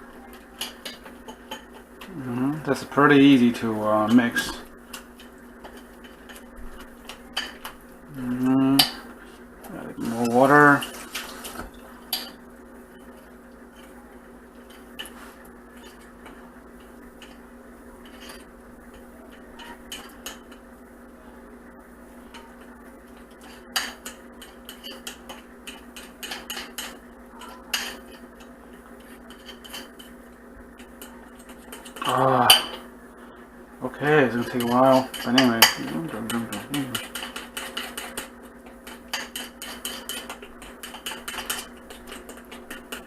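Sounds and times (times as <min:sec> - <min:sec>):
metal utensils clinking in bowl: 0:34.4 - 0:38.3.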